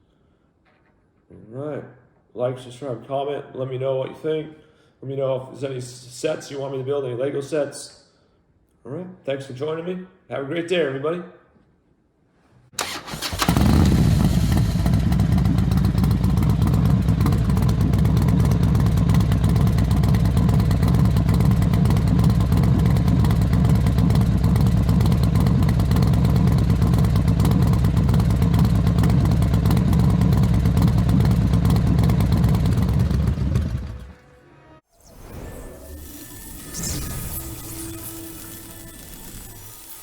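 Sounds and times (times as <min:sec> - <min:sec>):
engine running steadily: 0:13.1 - 0:34.3.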